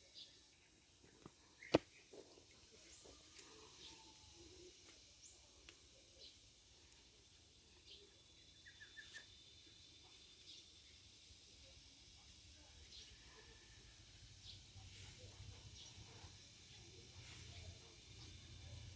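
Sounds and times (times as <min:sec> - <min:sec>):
small ticks: 0:08.8 - 0:09.5.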